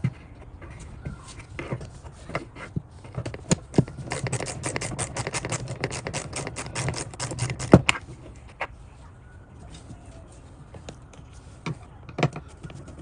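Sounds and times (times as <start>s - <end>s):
rapid even clicking: 3.2s - 8.0s.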